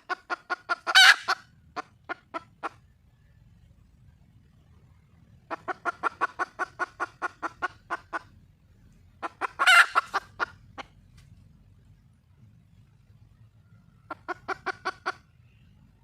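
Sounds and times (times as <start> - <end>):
hen squawk: 0.0 - 2.8, 9.2 - 10.9
hen clucking: 0.0 - 3.0, 5.4 - 11.2, 13.8 - 16.0.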